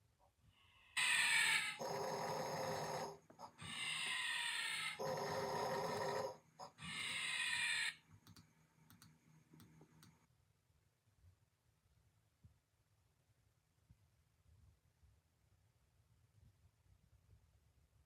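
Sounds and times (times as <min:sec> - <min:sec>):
loud snoring: 0:01.8 - 0:03.2, 0:05.0 - 0:06.4
faint clicks: 0:08.1 - 0:10.3.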